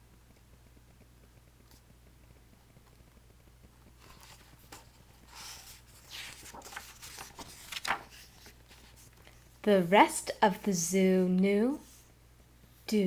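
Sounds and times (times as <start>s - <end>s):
book pages rustling: 4.0s - 9.6s.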